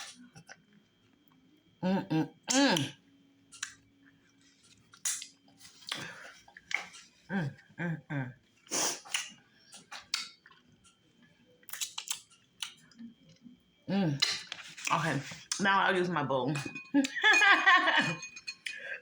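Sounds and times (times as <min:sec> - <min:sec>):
wet smacking and chewing: 0:04.7 - 0:07.0, 0:09.0 - 0:10.8, 0:11.6 - 0:13.5.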